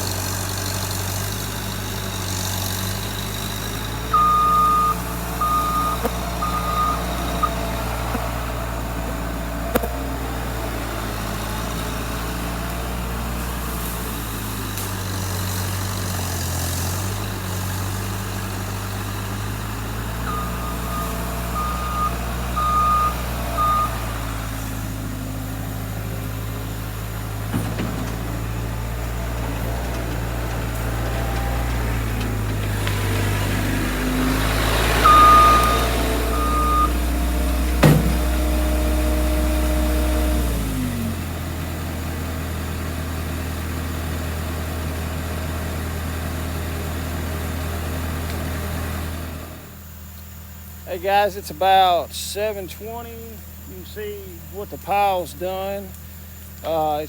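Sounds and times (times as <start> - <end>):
diesel engine running: 0.0 - 57.0
back-up alarm beeping: 4.0 - 8.2, 20.2 - 24.5, 35.0 - 37.0.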